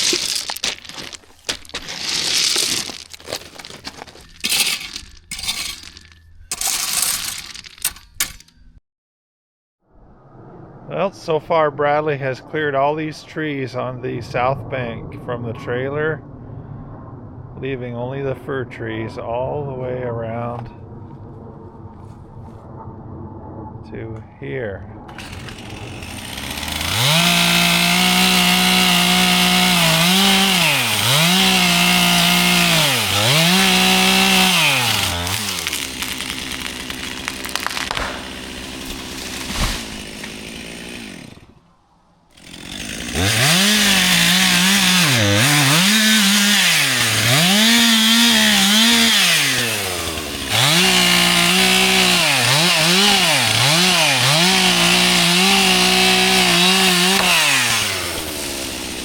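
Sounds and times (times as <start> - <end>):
chainsaw cutting wood: 0.0 - 8.5, 25.1 - 41.6, 42.3 - 59.0.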